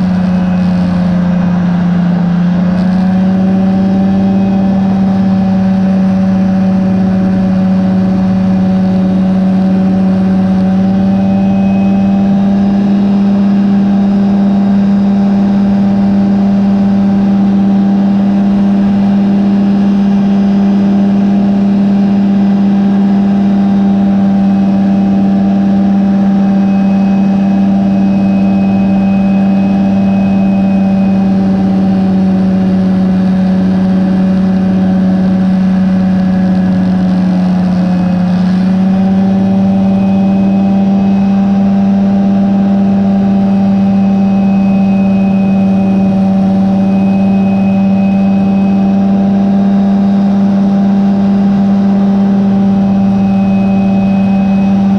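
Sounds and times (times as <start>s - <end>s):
ultralight two-stroke engine in flight: 0.0s - 54.9s.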